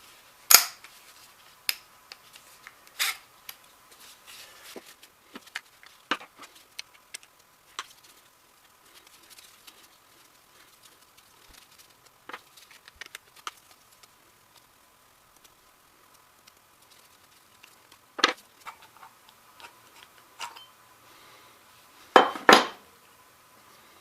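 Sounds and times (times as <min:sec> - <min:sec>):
metal parts clicking and knocking: 0:18.2 - 0:20.7.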